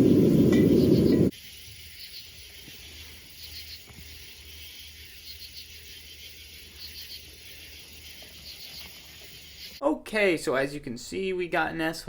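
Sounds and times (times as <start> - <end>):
faint cricket chirping: 0.0 - 9.8.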